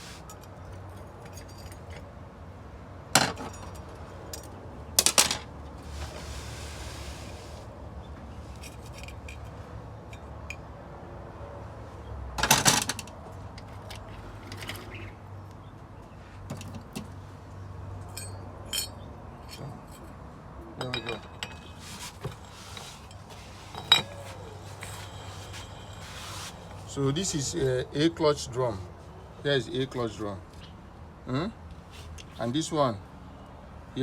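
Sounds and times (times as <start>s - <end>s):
metal parts clanking: 3.2s - 5.5s, 8.5s - 9.6s, 12.4s - 15.0s.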